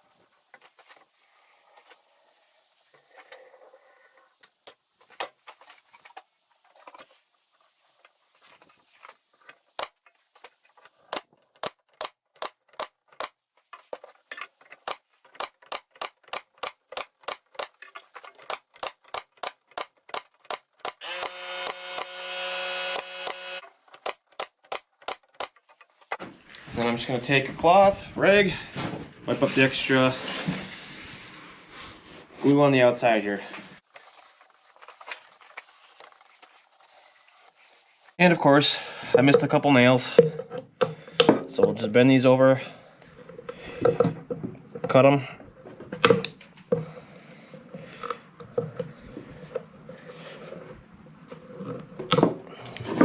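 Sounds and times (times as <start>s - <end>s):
steady whirring: 18.4s - 25.6s.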